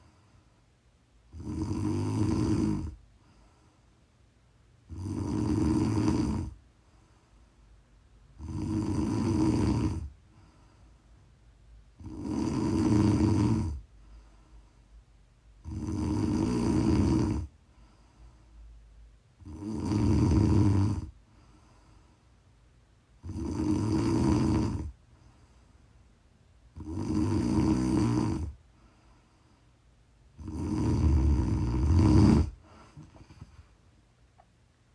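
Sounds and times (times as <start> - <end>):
quiet breathing: 0.0 - 15.6, 16.2 - 22.7, 23.8 - 34.5
woman snoring: 1.3 - 3.0, 4.9 - 6.6, 8.4 - 10.1, 12.0 - 13.8, 15.6 - 17.5, 19.4 - 21.2, 23.2 - 25.0, 26.8 - 28.6, 30.4 - 33.4.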